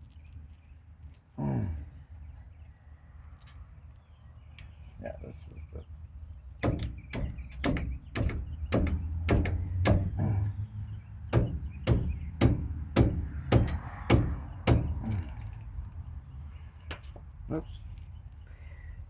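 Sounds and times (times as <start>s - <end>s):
socket wrench clicking: 15.1s - 15.9s.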